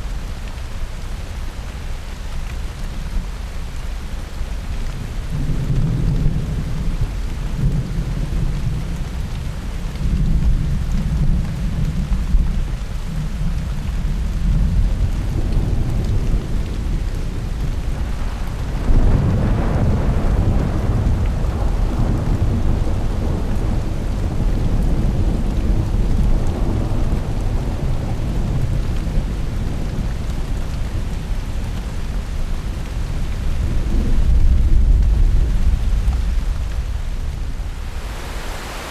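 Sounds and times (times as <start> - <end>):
steady rain: 0.0 - 38.9
low rolling thunder: 5.3 - 30.4.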